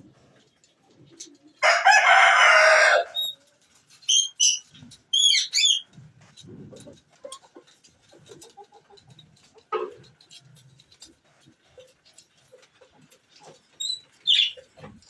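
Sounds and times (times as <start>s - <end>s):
faint clicks and rustles: 5.8s - 15.0s.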